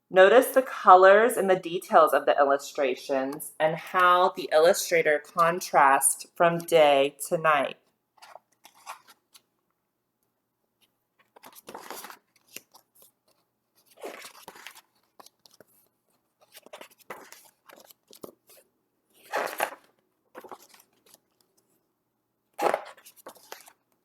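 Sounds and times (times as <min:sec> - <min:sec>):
book pages rustling: 0:08.1 - 0:09.5, 0:10.8 - 0:21.8, 0:22.6 - 0:24.0.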